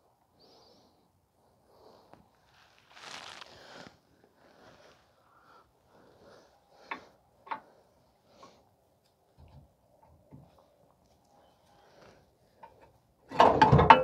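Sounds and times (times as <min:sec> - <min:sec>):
rustling swish: 0:02.4 - 0:04.0.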